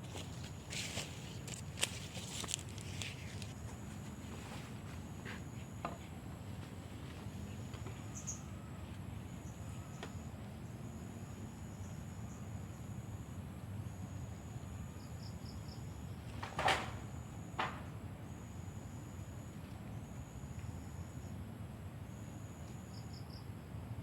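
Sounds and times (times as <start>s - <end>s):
insects trilling: 7.4s - 8.6s, 9.2s - 21.4s, 22.0s - 23.5s.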